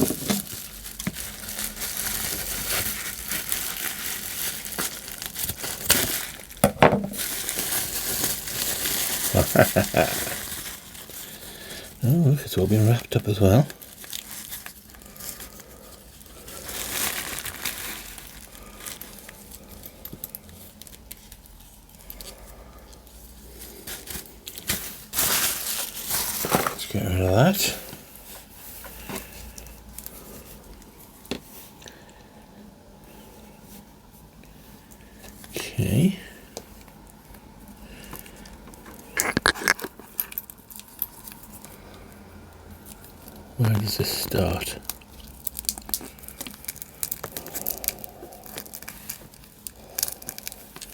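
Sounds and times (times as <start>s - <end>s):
wrapping rustling and clicking: 0.0s - 27.0s, 36.6s - 41.8s, 42.7s - 50.9s
packaging clicks and rattles: 44.8s - 50.9s.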